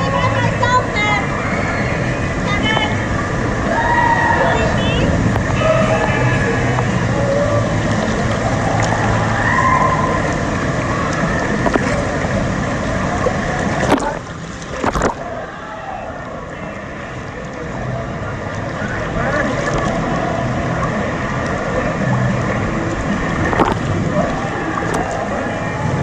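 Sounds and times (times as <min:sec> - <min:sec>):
rushing churning water: 0:00.0 - 0:26.0
sharp splashes: 0:07.6 - 0:15.5, 0:19.2 - 0:26.0.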